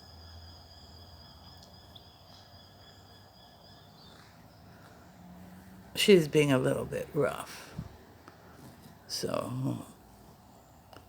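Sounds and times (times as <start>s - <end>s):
insect trilling: 0.0s - 6.8s.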